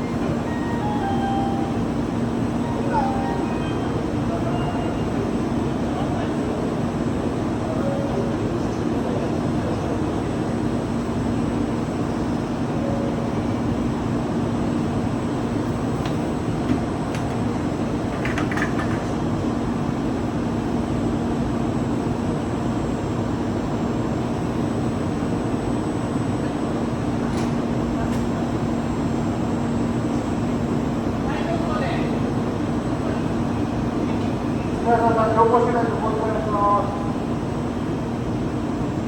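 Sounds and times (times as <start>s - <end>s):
train rushing noise: 0.0s - 21.1s.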